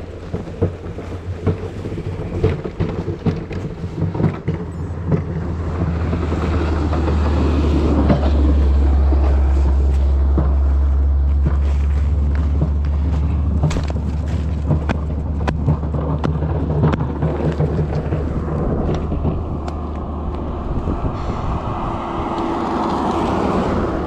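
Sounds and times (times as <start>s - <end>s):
bike clicks and rattles: 0.0s - 21.2s
bike riding through snow: 0.0s - 24.0s
wind rumbling on microphone: 0.0s - 24.0s
hissing rush: 17.0s - 24.0s.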